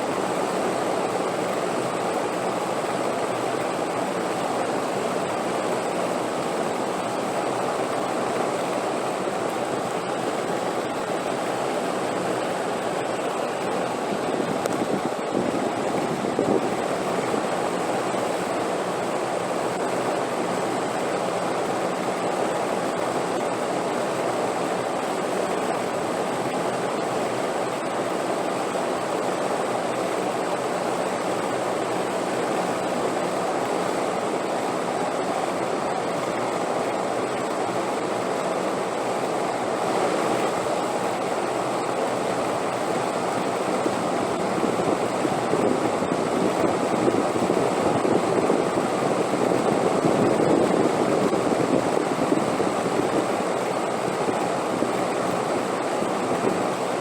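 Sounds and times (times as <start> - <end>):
wind blowing in gusts: 12.5 - 18.6, 43.0 - 57.0.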